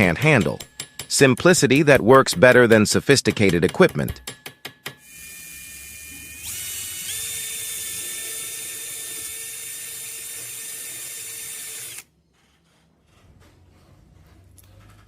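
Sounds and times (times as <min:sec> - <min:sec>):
power tool motor whine: 0:05.0 - 0:12.0.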